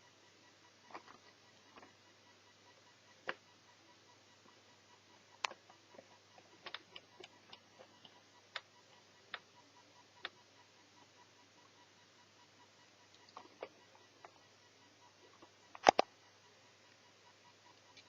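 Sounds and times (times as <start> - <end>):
faint steady hum: 0.0 - 18.0
small sharp clicks and taps: 6.6 - 8.7, 15.4 - 16.1.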